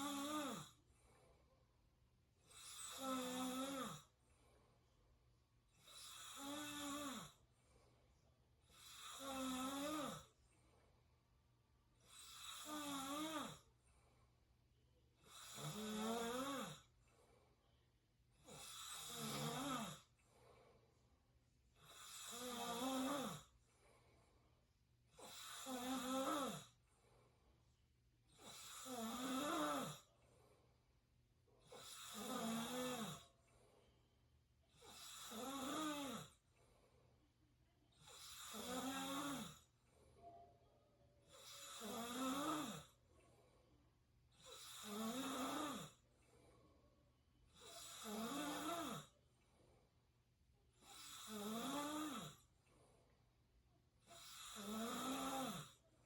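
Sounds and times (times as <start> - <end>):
person snoring: 0.0 - 0.8, 2.5 - 4.1, 5.8 - 7.4, 8.7 - 10.3, 12.0 - 13.7, 15.2 - 16.9, 18.5 - 20.1, 21.8 - 23.5, 25.2 - 26.8, 28.4 - 30.1, 31.6 - 33.3, 34.8 - 36.4, 38.0 - 39.7, 41.3 - 43.0, 44.4 - 46.0, 47.6 - 49.1, 50.8 - 52.4, 54.0 - 55.8.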